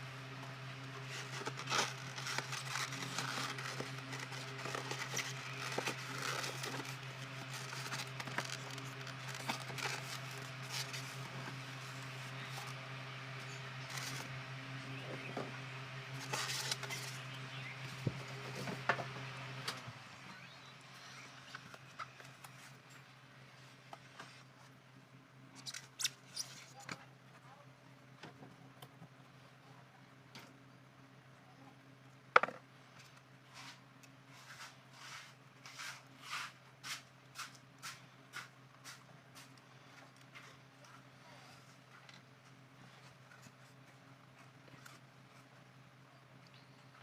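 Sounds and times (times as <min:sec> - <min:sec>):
low hum: 0:00.0 - 0:25.8
plastic packaging rustling: 0:01.0 - 0:12.8.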